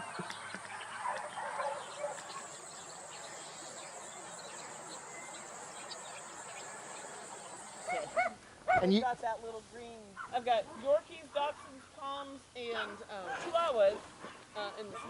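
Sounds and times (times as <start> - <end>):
faint animal calls: 0.0 - 8.9
insects trilling: 1.1 - 8.3.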